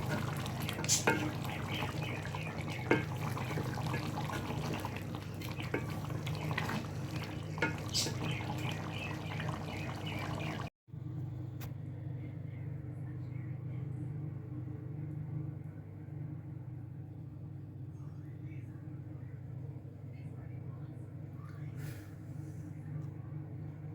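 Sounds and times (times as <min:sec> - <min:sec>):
curry sizzling in a pan: 0:00.0 - 0:10.7.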